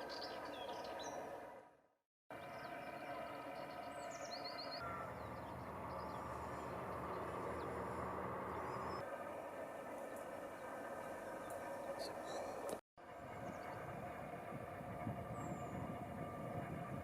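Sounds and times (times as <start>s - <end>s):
small birds chirping and trilling: 0.0s - 1.4s, 2.3s - 9.0s, 10.0s - 12.8s
steady background hum: 2.4s - 17.0s.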